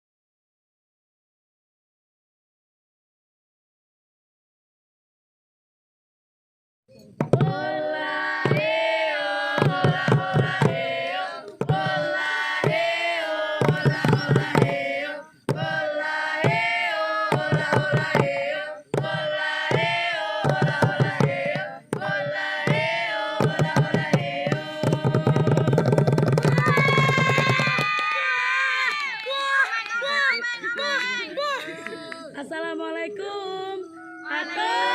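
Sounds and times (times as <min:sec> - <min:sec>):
rapid drum strokes: 0:19.7 - 0:27.7.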